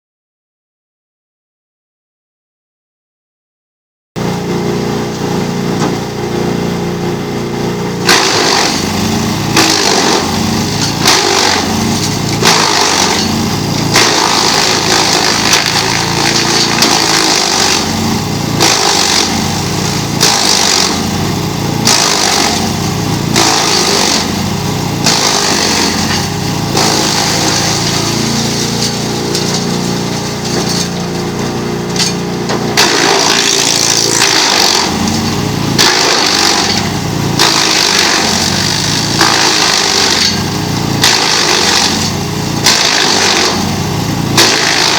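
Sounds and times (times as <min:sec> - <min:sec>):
wood chipper engine running: 0:04.2 - 0:44.9
wood chipping bursts: 0:08.0 - 0:40.4, 0:41.0 - 0:43.8, 0:44.4 - 0:44.9.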